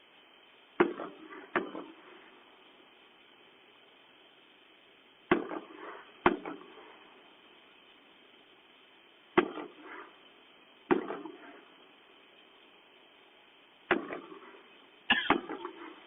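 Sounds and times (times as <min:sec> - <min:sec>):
firework bangs with echo: 0:00.8 - 0:02.1, 0:05.3 - 0:06.9, 0:09.3 - 0:10.2, 0:10.9 - 0:11.6, 0:13.9 - 0:14.7, 0:15.3 - 0:16.0.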